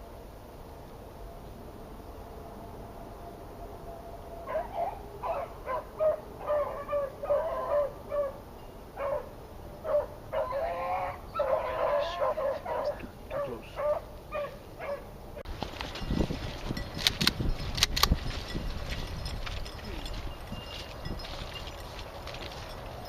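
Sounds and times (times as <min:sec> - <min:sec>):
dogs barking and yipping: 0:04.4 - 0:08.4, 0:09.0 - 0:15.2.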